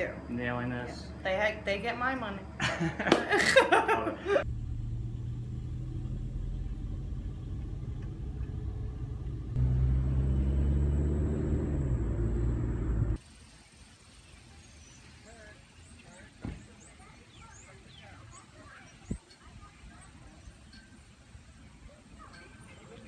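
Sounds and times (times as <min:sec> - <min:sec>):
car driving rumble: 0:03.8 - 0:13.2.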